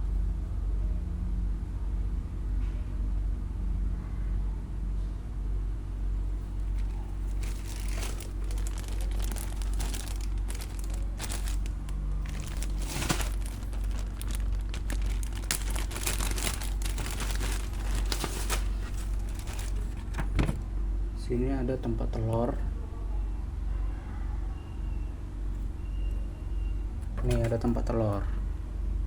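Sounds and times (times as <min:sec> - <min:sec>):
steady low hum: 0:00.0 - 0:23.8
plastic packaging crinkling and tearing: 0:06.4 - 0:20.6.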